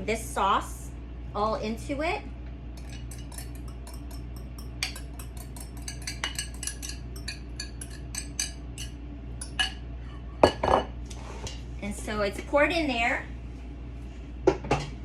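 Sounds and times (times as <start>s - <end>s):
utensil clinking against bowl: 2.8s - 9.8s, 10.4s - 10.9s.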